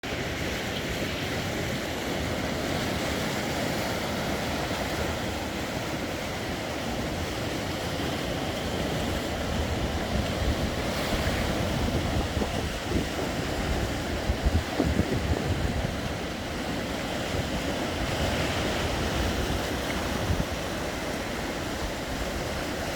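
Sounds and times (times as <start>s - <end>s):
sea waves washing on shore: 0.0s - 22.9s
wind buffeting microphone: 0.2s - 22.9s.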